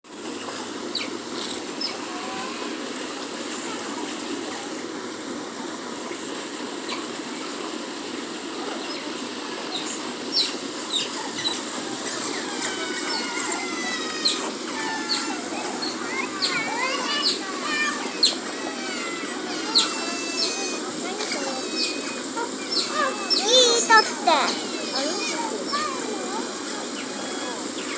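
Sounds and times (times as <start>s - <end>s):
otters chirping: 14.2s - 25.8s.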